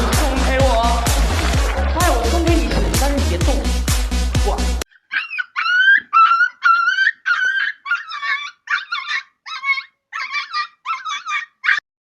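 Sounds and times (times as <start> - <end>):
dog whining yelps: 4.9 - 11.8.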